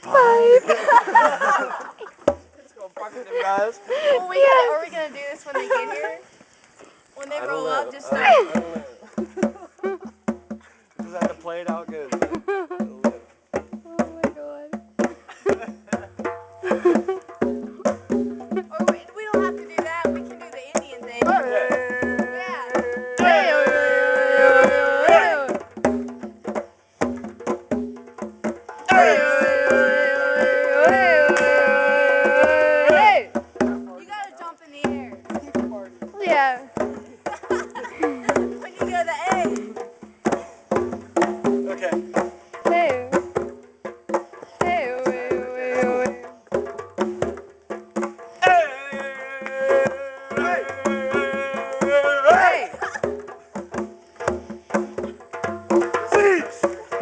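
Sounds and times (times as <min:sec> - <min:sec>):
music with percussive beat: 0:01.0 - 0:03.6, 0:07.9 - 0:57.0.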